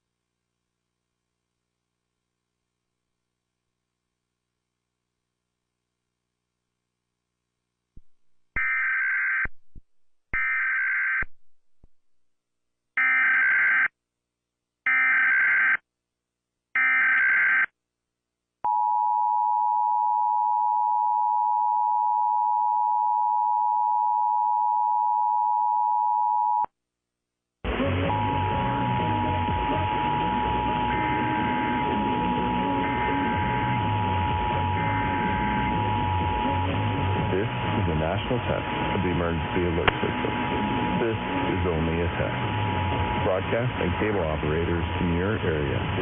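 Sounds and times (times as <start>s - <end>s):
two-tone electronic buzz: 27.6s - 46.0s
screechy data tones: 28.1s - 37.6s.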